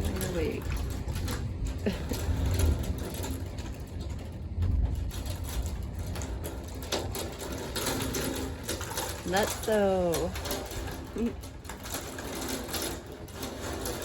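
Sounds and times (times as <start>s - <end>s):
low thunder rumble: 0.0s - 9.7s
hail and rain pelting a window: 0.0s - 14.0s.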